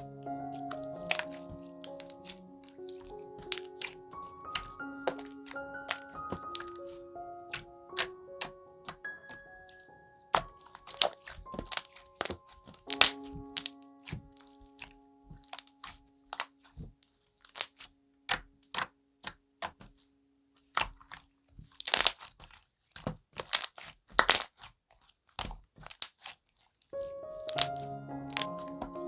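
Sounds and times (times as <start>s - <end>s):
slime squeezed popping and clicking: 18.3s - 19.8s, 27.5s - 27.7s.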